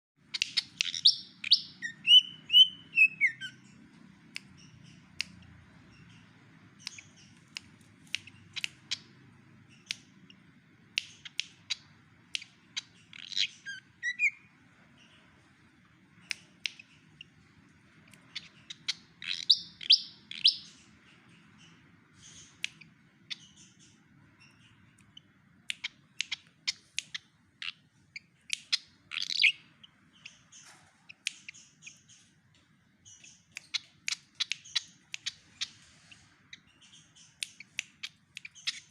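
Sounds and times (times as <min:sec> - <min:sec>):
bird singing chirps and whistles: 0:00.3 - 0:03.8, 0:11.0 - 0:14.5, 0:18.3 - 0:20.8, 0:21.6 - 0:30.5.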